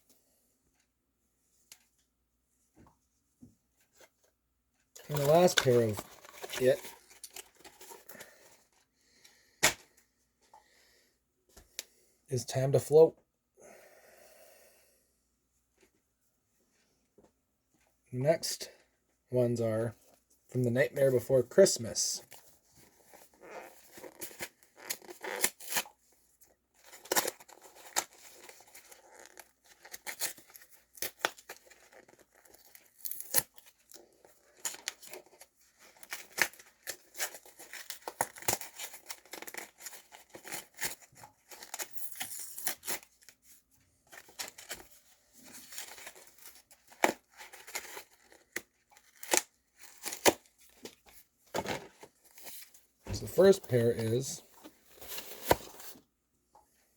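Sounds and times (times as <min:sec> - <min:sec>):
packaging tearing and crinkling: 0:05.0 - 0:08.1, 0:26.8 - 0:43.2, 0:45.4 - 0:50.8.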